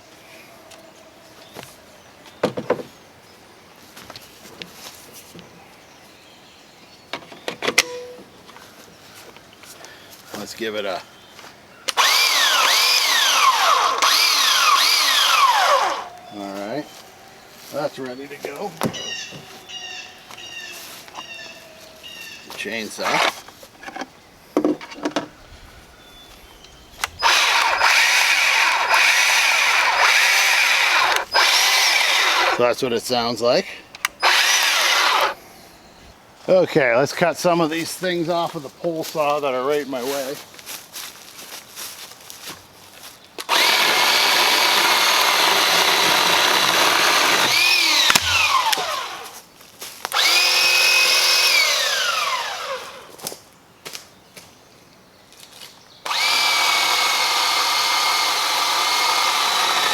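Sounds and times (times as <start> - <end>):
chainsaw stopping thud: 11.9 - 16.1, 22.9 - 23.5, 26.4 - 32.6, 34.2 - 35.4, 43.4 - 49.4, 56.1 - 59.9
cordless saw motor whining: 11.9 - 16.2, 22.8 - 23.5, 26.3 - 32.6, 34.0 - 35.4, 43.4 - 49.4, 50.1 - 53.2, 56.0 - 59.9
electric chainsaw cutting wood: 11.9 - 16.2, 22.8 - 23.5, 27.0 - 32.6, 34.1 - 35.4, 43.4 - 49.4, 50.1 - 53.2, 56.1 - 59.9
saw trigger pull: 27.0 - 32.6, 34.0 - 35.4, 43.5 - 49.1.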